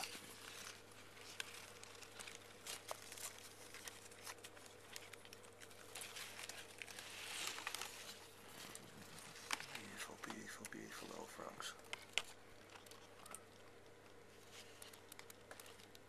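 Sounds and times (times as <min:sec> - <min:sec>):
faint rustling: 0:00.0 - 0:16.0
low hum and hiss: 0:00.0 - 0:16.0.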